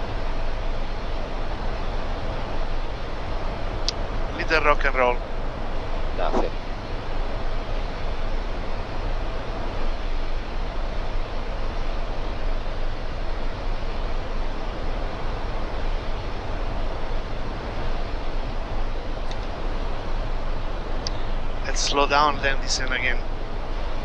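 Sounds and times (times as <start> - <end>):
deep constant rumble: 0.0 - 24.0
airliner cockpit rushing noise: 5.9 - 10.4, 11.0 - 23.7.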